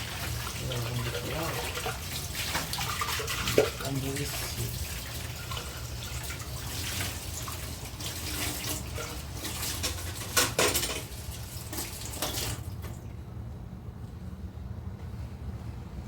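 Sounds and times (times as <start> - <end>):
water running from tap: 0.0 - 13.0
dishes clattering: 8.6 - 11.1.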